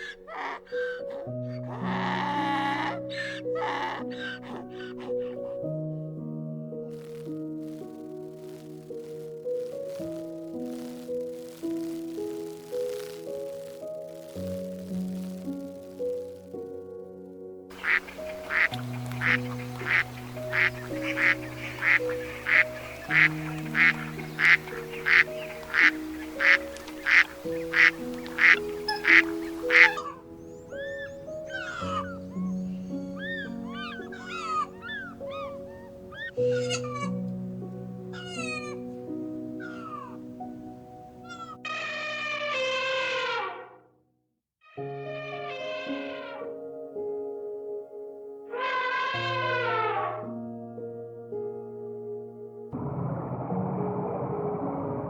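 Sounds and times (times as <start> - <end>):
duck quacking: 0.0 - 5.4, 17.7 - 30.2, 33.2 - 37.2
background music: 0.0 - 43.6, 44.8 - 55.0.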